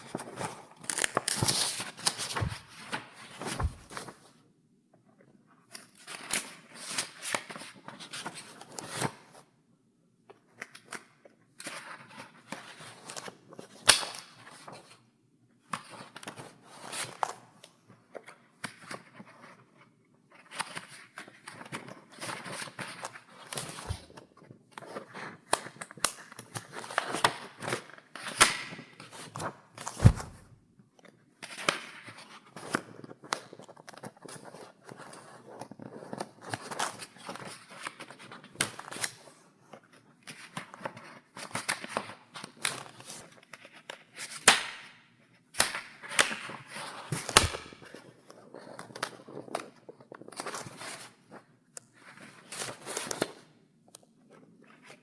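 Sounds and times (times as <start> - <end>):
paper pages turning: 0.0 - 4.2, 29.4 - 30.5, 46.2 - 49.6.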